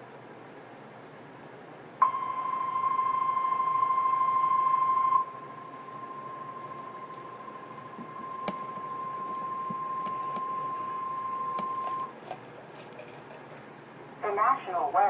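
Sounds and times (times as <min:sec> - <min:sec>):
steady high warning tone: 0:02.0 - 0:12.2
faint clicks: 0:08.0 - 0:12.1.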